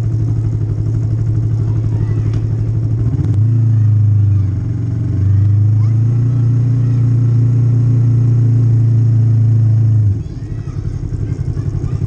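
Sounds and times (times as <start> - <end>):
motorcycle engine revving: 0.0 - 12.0.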